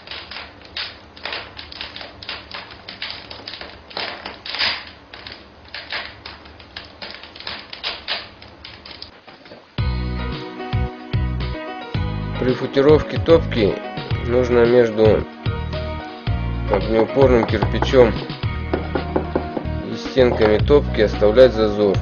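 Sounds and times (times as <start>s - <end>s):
rapid hard clicking and tapping: 0.0s - 9.1s, 17.3s - 19.7s.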